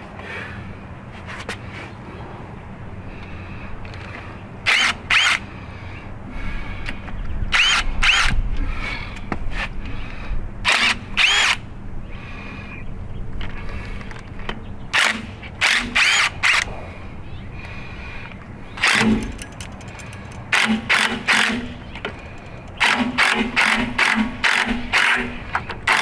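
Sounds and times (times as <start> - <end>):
power driver whining: 18.8 - 23.1.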